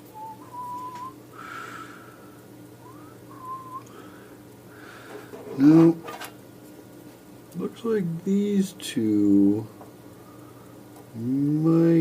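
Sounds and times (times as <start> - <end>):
man whistling: 0.1 - 1.2, 2.8 - 4.0.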